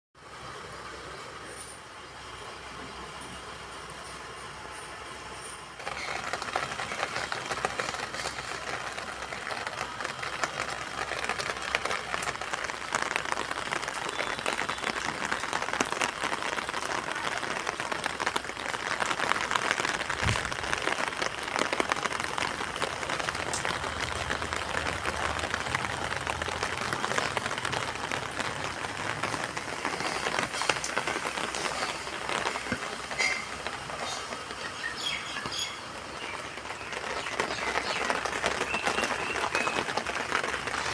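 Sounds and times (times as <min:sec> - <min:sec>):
rain pattering on hard surfaces: 0:00.2 - 0:40.9.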